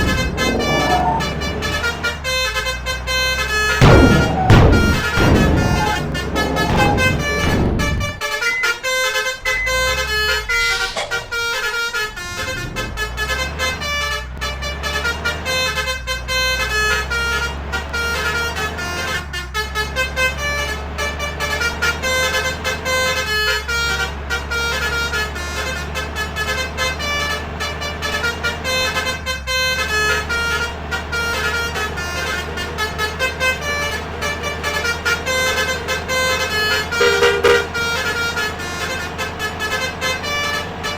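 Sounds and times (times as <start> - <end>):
loud low rumble: 0.0 - 3.1, 3.8 - 8.3, 8.9 - 13.2
bus engine drone: 0.0 - 40.9
multi-tone bus horn tune: 0.0 - 40.9.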